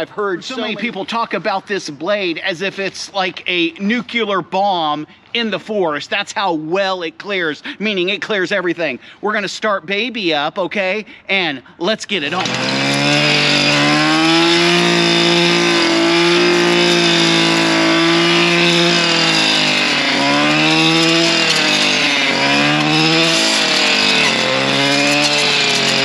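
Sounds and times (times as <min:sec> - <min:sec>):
brush cutter engine revving: 0:12.2 - 0:26.0.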